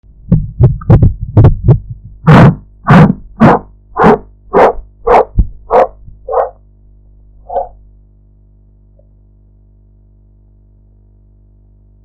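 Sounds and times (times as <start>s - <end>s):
pulse thumps through stethoscope: 0.2s - 6.6s.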